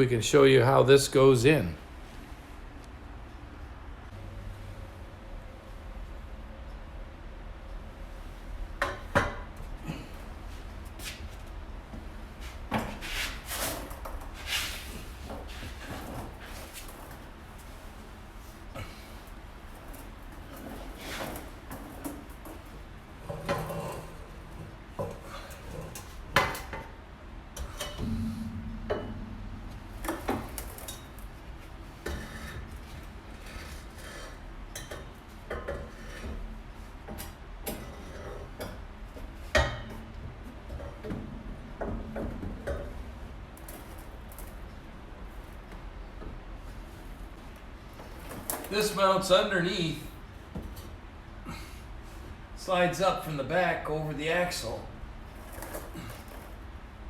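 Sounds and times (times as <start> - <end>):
exhaust pipe scraping and knocking: 27.6 - 34.4
sharp metal knock: 28.0 - 31.0.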